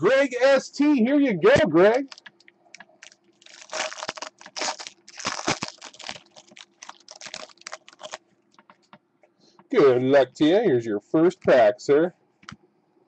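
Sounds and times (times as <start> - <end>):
foil wrapper crinkling and tearing: 2.0 - 2.3, 3.0 - 8.2.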